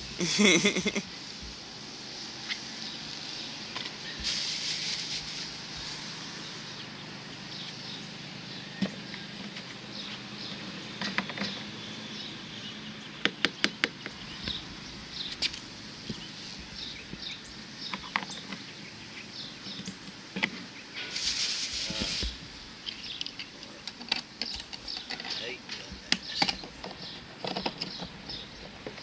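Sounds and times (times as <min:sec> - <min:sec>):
small birds chirping: 0:00.0 - 0:29.0
brief rustle: 0:21.0 - 0:22.4.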